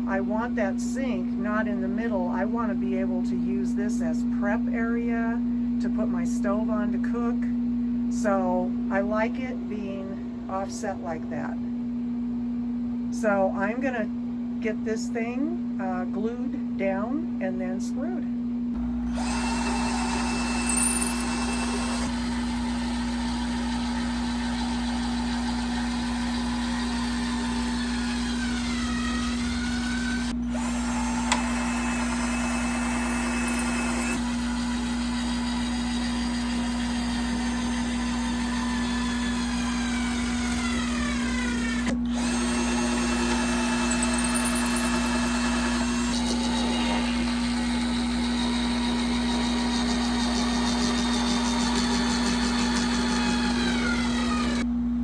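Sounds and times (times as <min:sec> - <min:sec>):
electric drill driving screws: 0:19.1 - 0:54.7.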